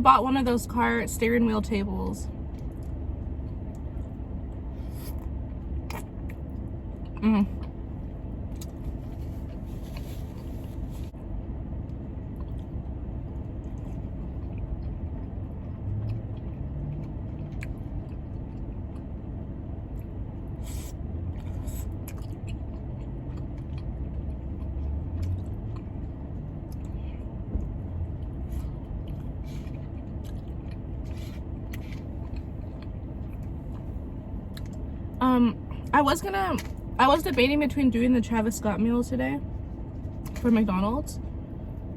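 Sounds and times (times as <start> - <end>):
car engine and air conditioning hum: 0.0 - 41.9
person chewing: 2.5 - 11.1, 12.3 - 19.2, 19.8 - 34.9.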